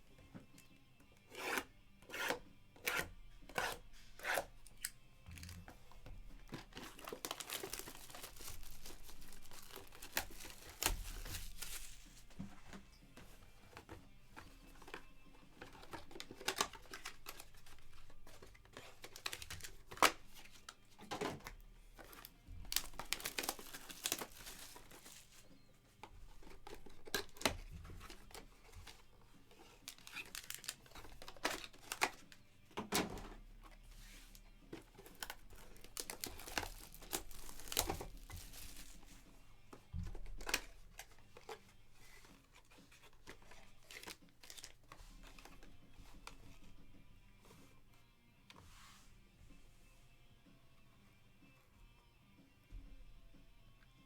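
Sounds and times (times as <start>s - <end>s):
plastic wrappers tearing and crinkling: 6.4s - 12.3s, 15.6s - 25.5s, 26.3s - 32.4s, 34.9s - 39.3s, 40.0s - 46.4s.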